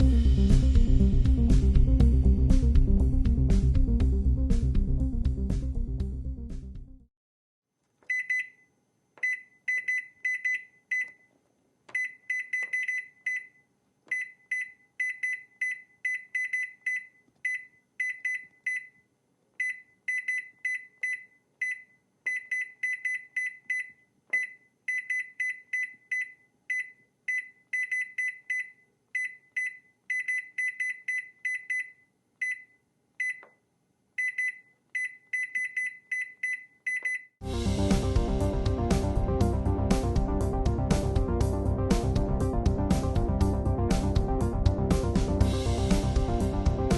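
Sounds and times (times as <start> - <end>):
keypad beeps: 8.1 - 8.6, 9.2 - 11.3, 11.9 - 19.0, 19.6 - 33.6, 34.2 - 37.3.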